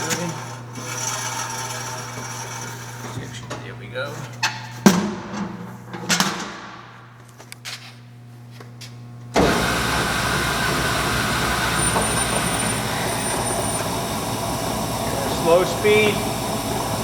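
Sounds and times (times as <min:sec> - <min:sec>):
bandsaw running: 0:09.4 - 0:17.0.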